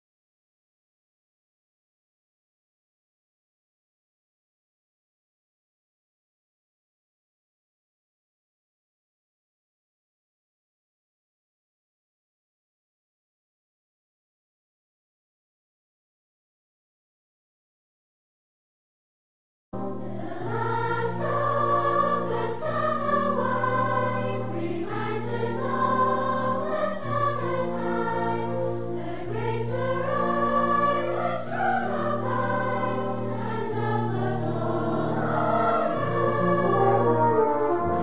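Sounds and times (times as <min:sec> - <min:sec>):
choral music: 0:19.8 - 0:38.0.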